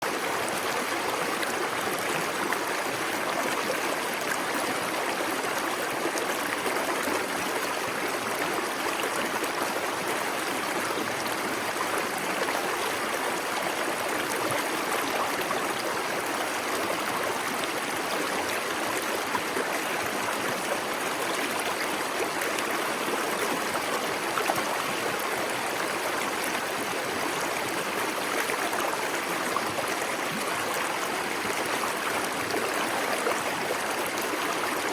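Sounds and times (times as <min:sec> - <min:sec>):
stream rushing and gurgling: 0:00.0 - 0:34.9.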